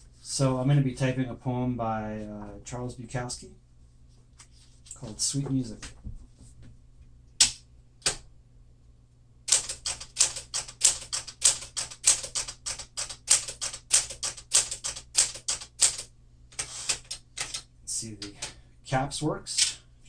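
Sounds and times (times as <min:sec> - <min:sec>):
manual typewriter typing: 0:09.5 - 0:18.6.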